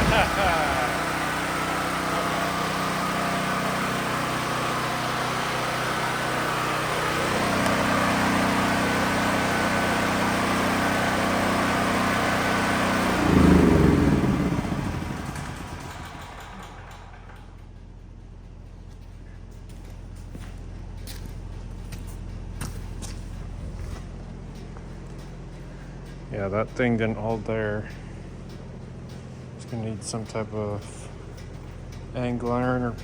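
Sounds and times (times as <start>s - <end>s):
engine running and revving: 0.0s - 17.4s.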